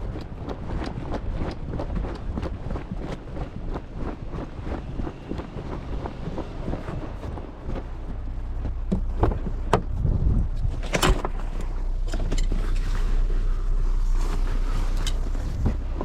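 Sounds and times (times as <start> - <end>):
vehicle engine rumbling: 0.0 - 16.0
sharp clicks and knocks: 8.6 - 12.6.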